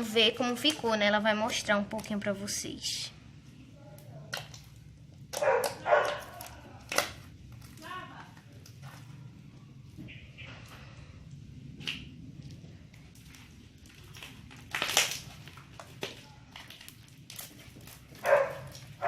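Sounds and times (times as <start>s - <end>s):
slime squishing and squelching: 3.4s - 19.0s.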